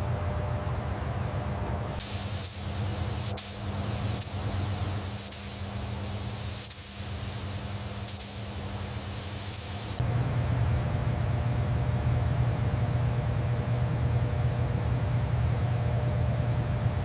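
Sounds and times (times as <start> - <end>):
spraying hiss: 2.0 - 10.0.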